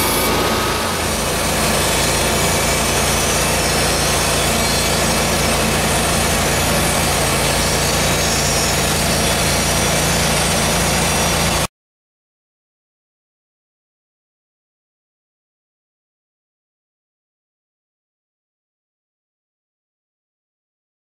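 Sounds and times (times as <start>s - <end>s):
engine hum: 0.0s - 11.7s
saw blade cutting wood: 0.0s - 11.7s.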